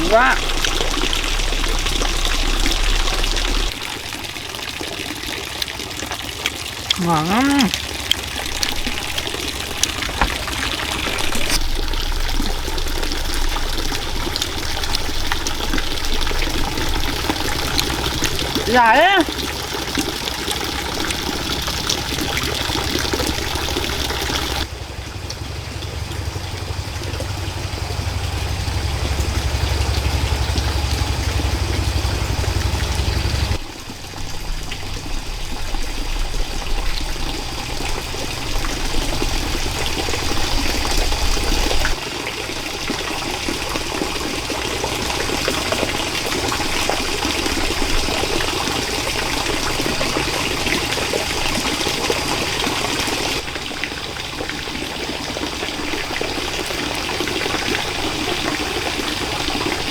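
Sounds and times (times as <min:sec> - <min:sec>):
stream water running: 0:00.0 - 0:59.9
low rumble: 0:00.4 - 0:03.8.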